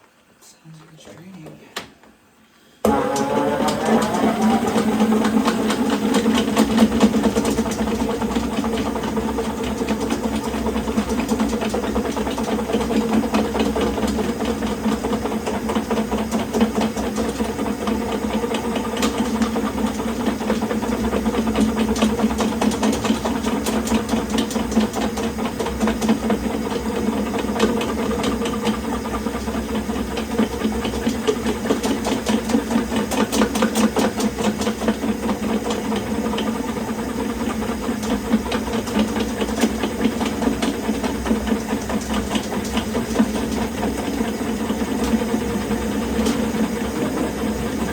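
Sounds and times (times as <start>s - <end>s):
drain snake motor humming: 15.4s - 23.5s.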